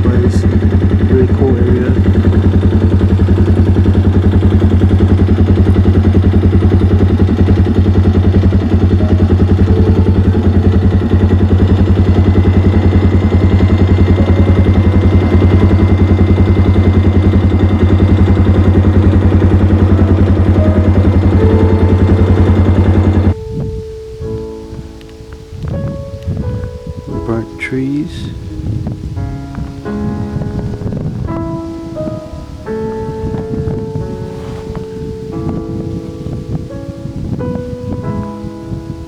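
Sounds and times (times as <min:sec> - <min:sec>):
vehicle engine running: 0:00.0 - 0:39.0.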